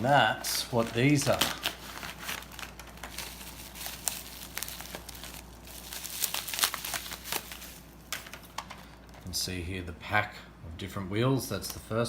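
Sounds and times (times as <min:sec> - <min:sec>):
packaging crinkling: 0:00.0 - 0:09.2.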